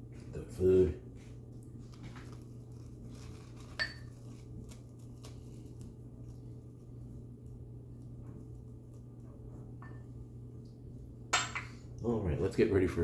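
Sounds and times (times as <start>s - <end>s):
metal clink on hard surface: 11.3s - 11.8s.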